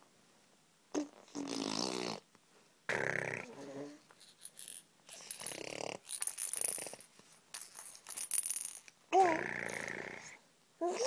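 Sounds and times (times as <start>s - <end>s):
raspy hissing mouth sputters: 2.9s - 4.4s, 9.4s - 10.4s.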